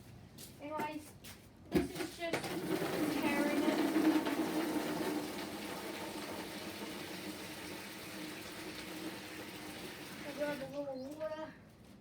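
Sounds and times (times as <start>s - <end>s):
water running into washing machine tub: 2.4s - 10.8s.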